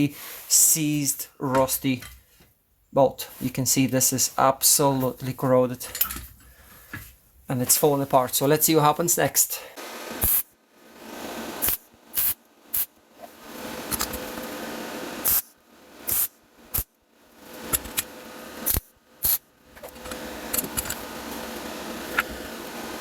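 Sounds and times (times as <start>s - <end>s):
welder crackling hiss: 9.4s - 10.6s, 11.3s - 12.9s, 13.9s - 16.9s, 18.6s - 19.4s.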